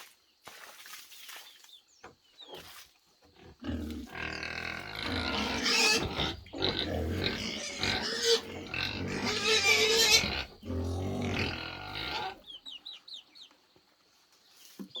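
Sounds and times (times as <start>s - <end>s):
pigs squealing and grunting: 3.4s - 12.5s
small bird chirping: 12.3s - 15.0s.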